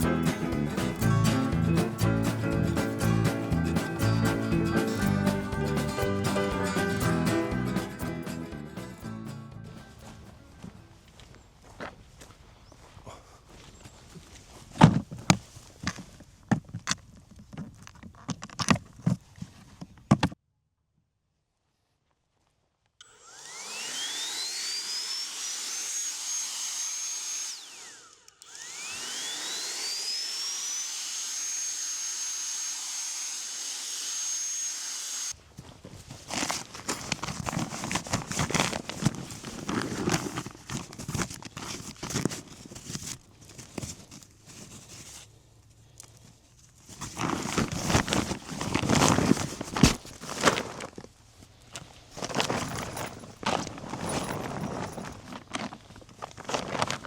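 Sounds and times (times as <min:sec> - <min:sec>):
rustling clicks and knocks: 0:14.7 - 0:20.4, 0:35.6 - 0:45.4, 0:46.0 - 0:57.0
small electric motor whining: 0:23.0 - 0:35.4.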